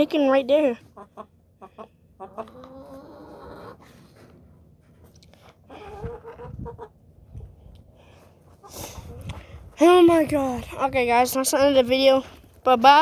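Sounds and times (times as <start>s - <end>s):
chickens clucking: 0.1s - 9.8s.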